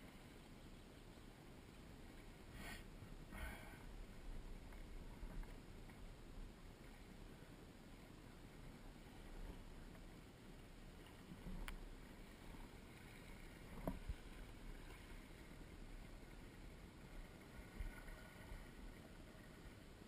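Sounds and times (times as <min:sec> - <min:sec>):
faint water movement of kayak: 0:00.0 - 0:20.0.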